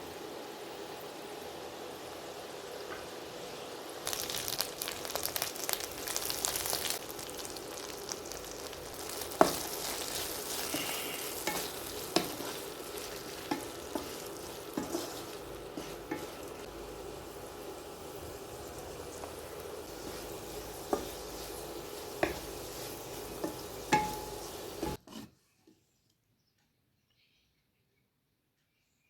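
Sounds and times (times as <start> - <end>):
potatoes sizzling in hot oil: 0.0 - 25.0
sharp knocks of stirring in pan: 9.4 - 16.7, 19.2 - 25.0.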